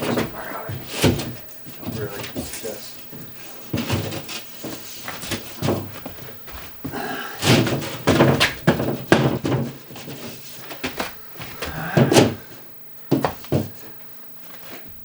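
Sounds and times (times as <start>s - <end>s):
drywall sheet knocks and scrapes: 0.0s - 6.7s, 7.4s - 11.0s.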